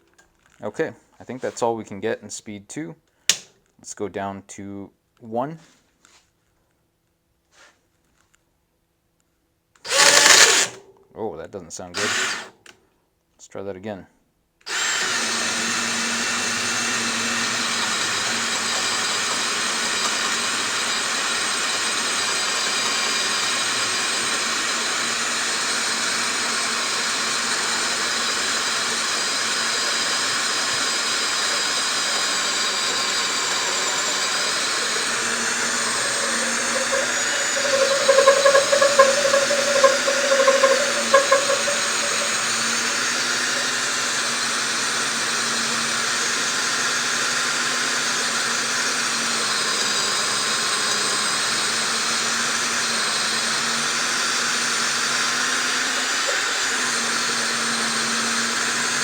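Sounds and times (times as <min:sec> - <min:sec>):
cordless drill whining under load: 0:09.9 - 0:10.8, 0:12.0 - 0:12.5, 0:14.7 - 0:59.0.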